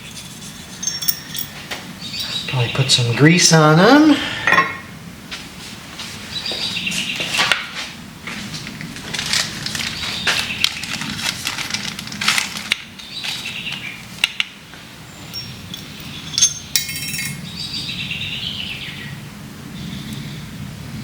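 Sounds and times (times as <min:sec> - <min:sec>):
metal parts clinking: 0:00.1 - 0:01.6, 0:15.2 - 0:17.5.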